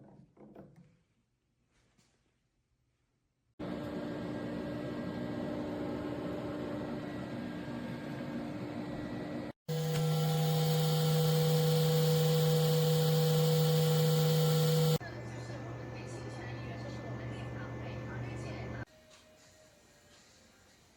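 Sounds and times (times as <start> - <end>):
air fryer fan hum: 3.6 - 18.8.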